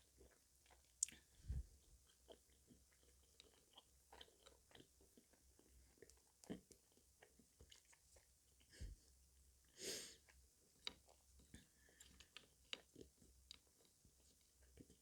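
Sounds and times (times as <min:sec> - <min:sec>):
mouth chewing sweets: 0:02.0 - 0:08.7.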